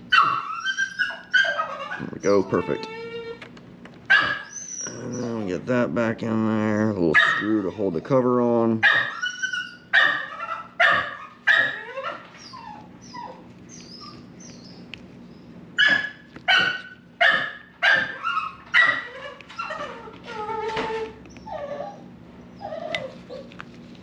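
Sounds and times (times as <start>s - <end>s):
puppy whining: 0.0s - 3.5s, 4.1s - 5.7s, 8.8s - 23.7s
puppy barking: 0.1s - 2.6s, 4.1s - 5.3s, 7.1s - 7.8s, 8.8s - 14.3s, 15.8s - 21.1s
puppy yipping: 0.1s - 3.4s, 4.1s - 5.4s, 7.2s - 7.8s, 8.8s - 23.6s.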